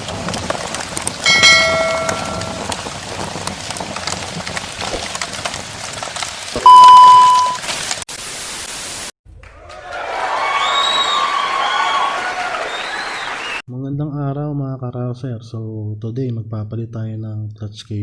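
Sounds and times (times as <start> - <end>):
crackling with clicks: 0.0 - 8.0
loud steady beep: 6.6 - 7.6
crowd cheering and whooping: 9.4 - 13.6.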